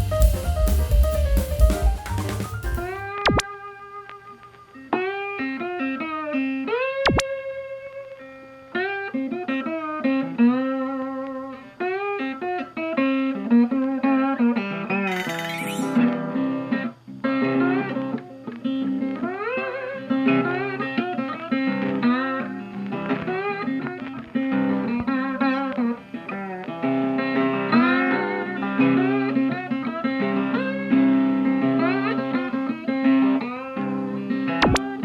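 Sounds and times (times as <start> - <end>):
steady bass line: 0.0 - 3.2.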